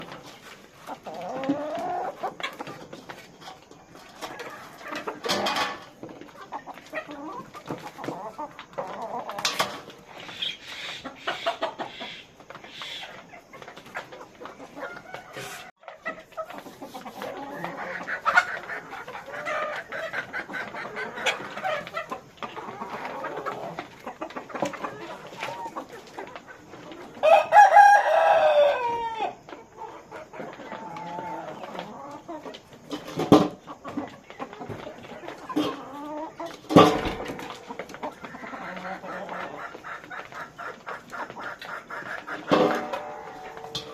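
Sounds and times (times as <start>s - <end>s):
chickens clucking: 0.0s - 43.9s
rooster crowing: 27.2s - 29.4s.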